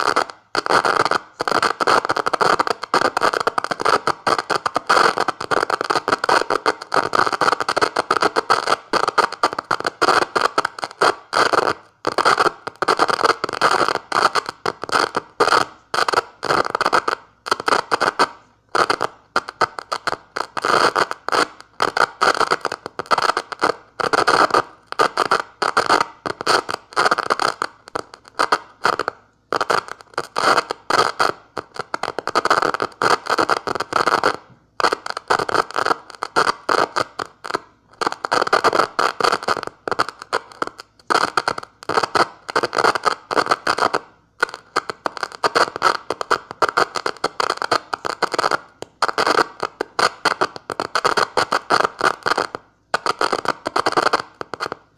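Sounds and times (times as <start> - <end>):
scratchy crackling morse code bursts: 0.0 - 18.3, 29.6 - 54.8.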